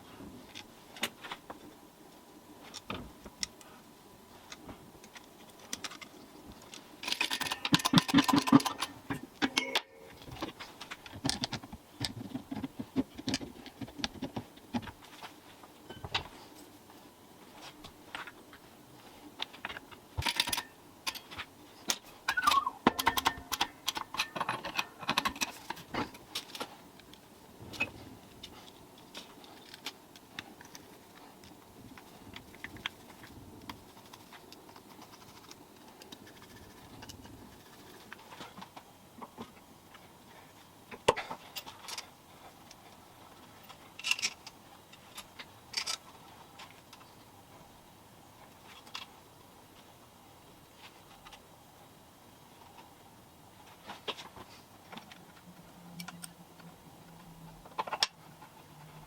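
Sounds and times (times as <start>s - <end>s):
metal parts and tools clinking: 7.0s - 10.2s, 43.7s - 44.6s.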